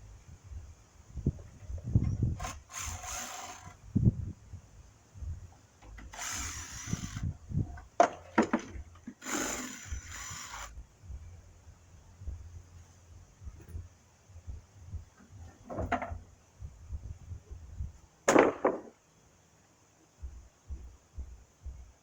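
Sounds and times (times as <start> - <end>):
wood scraping: 1.4 - 3.8, 5.8 - 10.8
wooden planks knocking: 7.9 - 9.0, 15.5 - 16.2, 18.3 - 18.9.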